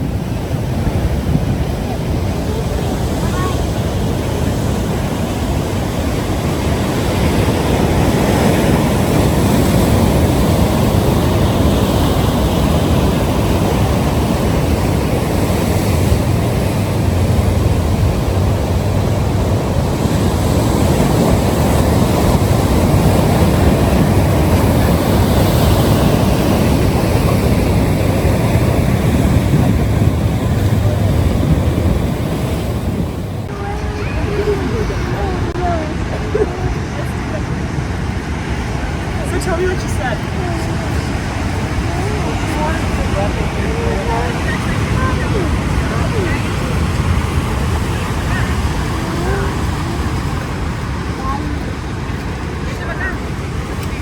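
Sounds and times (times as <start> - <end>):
ocean surf breaking: 0.0 - 54.0.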